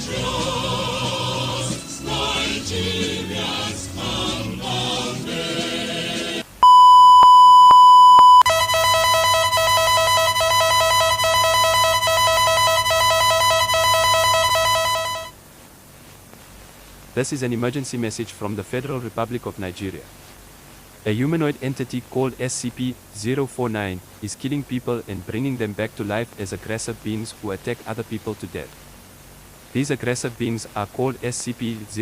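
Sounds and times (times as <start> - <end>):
choral music: 0.0 - 6.5
loud steady beep: 6.6 - 15.4
pulsing multi-pitched alert tone: 8.3 - 15.3.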